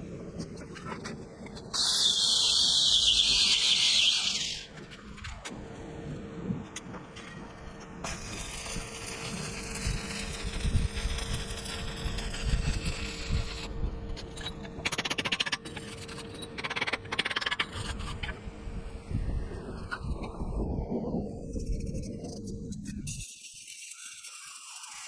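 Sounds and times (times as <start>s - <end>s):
arc welding hiss and crackle: 1.7s - 5.1s, 8.0s - 18.4s, 23.0s - 25.0s.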